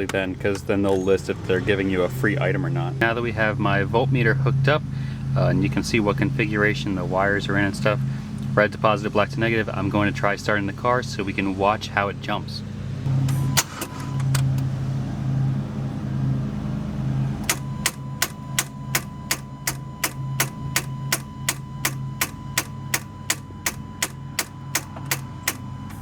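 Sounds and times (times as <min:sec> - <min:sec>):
rapid starter clicking: 0:13.2 - 0:14.7, 0:17.4 - 0:26.0
low pulsing hum: 0:14.6 - 0:26.0.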